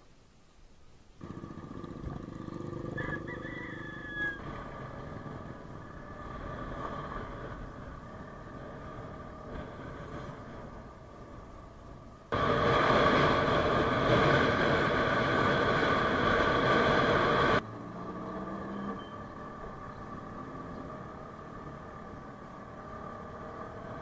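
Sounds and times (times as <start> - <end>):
motor scooter running: 1.2 - 10.1.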